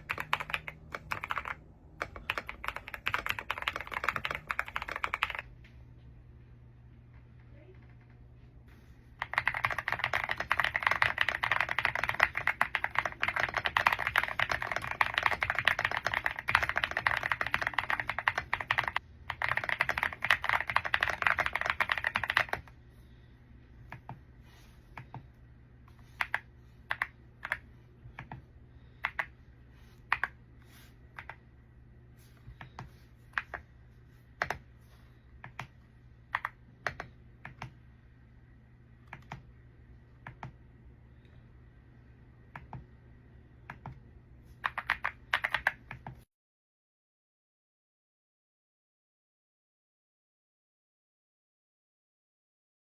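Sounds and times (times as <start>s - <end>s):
mechanical keyboard typing: 0.0s - 5.5s, 9.2s - 22.7s, 26.1s - 28.4s, 29.0s - 29.3s, 30.1s - 30.4s, 35.4s - 37.8s, 39.1s - 39.5s, 44.6s - 46.2s.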